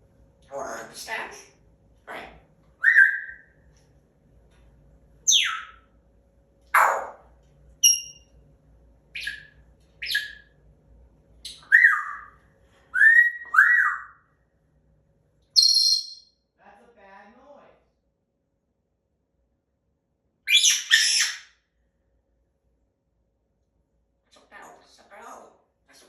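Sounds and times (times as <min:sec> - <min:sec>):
parrot squawking: 0:00.5 - 0:01.4, 0:02.8 - 0:03.5, 0:05.3 - 0:05.8, 0:06.8 - 0:07.2, 0:09.2 - 0:10.5, 0:11.5 - 0:14.2, 0:15.6 - 0:16.2, 0:20.5 - 0:21.6
parrot whistling: 0:02.8 - 0:03.5, 0:05.3 - 0:05.8, 0:07.8 - 0:08.2, 0:09.2 - 0:10.5, 0:11.5 - 0:14.2, 0:15.6 - 0:16.3, 0:20.5 - 0:21.5.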